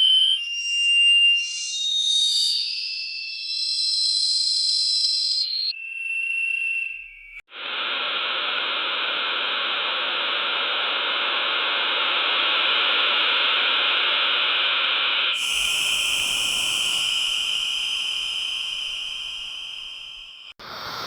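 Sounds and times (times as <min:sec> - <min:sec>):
whistling tone: 0:00.0 - 0:07.4, 0:15.4 - 0:20.6
loud rushing hiss: 0:15.4 - 0:21.0.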